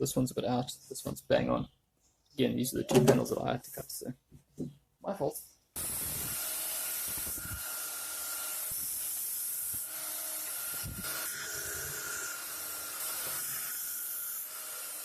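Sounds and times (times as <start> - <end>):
belt sander grinding: 5.9 - 15.0.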